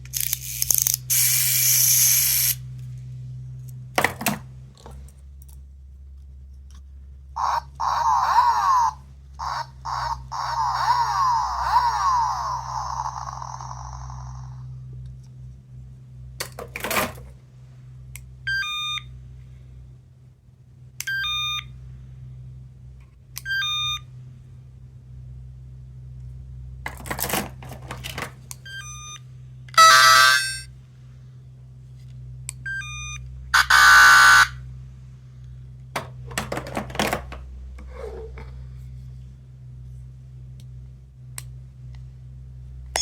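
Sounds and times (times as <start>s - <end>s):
toy being handled: 0.0s - 2.6s
toy sound effects: 7.4s - 14.6s, 29.8s - 30.7s, 33.6s - 34.6s.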